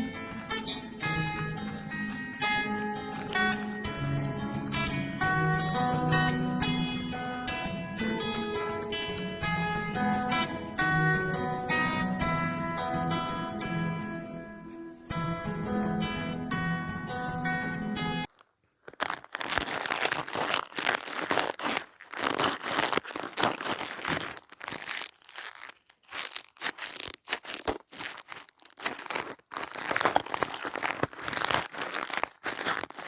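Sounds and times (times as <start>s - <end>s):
toy crinkling and crumpling: 2.4s - 4.8s, 6.1s - 9.8s, 18.2s - 33.0s.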